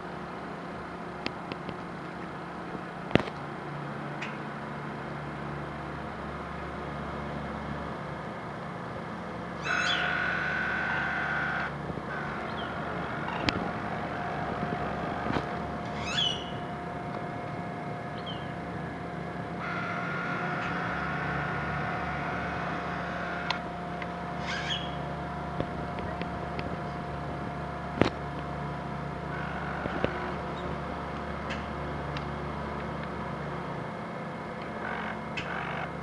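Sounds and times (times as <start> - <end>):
model boat motor humming: 9.5 - 24.4
bird chirps: 16.0 - 16.6, 18.2 - 18.5, 24.5 - 25.0.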